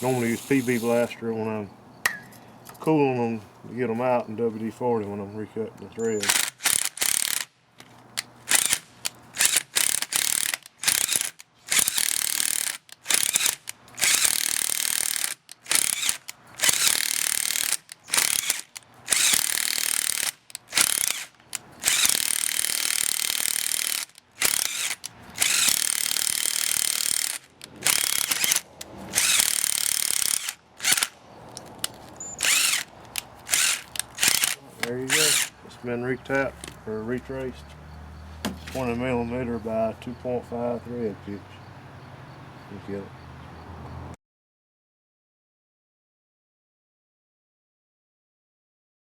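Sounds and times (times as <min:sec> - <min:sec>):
power tool tapping threads: 0:06.2 - 0:31.1, 0:31.8 - 0:35.6.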